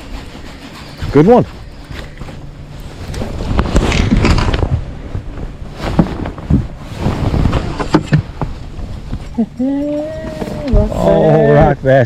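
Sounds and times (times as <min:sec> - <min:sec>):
knocks and rustles: 0:00.0 - 0:09.4
wind rumbling on microphone: 0:01.0 - 0:11.9.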